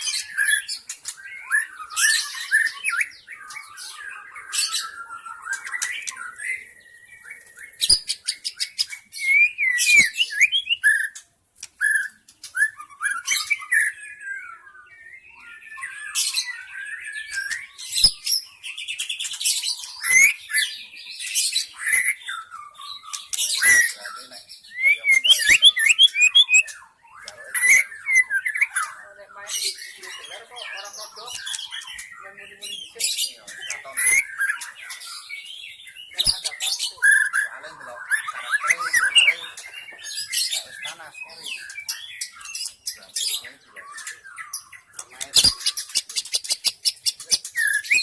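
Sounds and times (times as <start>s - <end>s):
songbird whistling and warbling: 0.0s - 48.0s.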